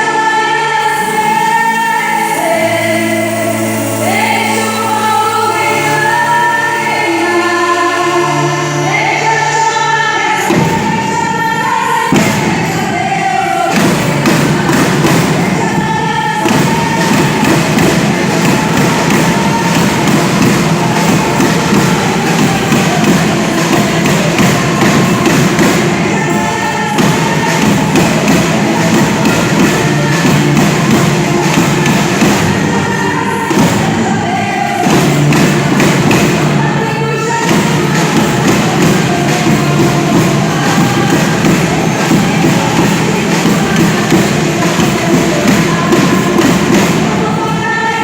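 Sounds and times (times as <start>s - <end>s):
percussion drums: 0.0s - 48.0s
voices singing held notes: 0.0s - 48.0s.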